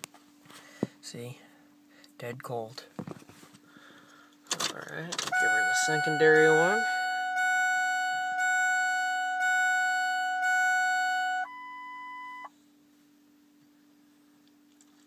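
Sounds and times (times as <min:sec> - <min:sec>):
faint steady hum: 0:00.0 - 0:15.0
dashboard warning chime: 0:05.3 - 0:12.5.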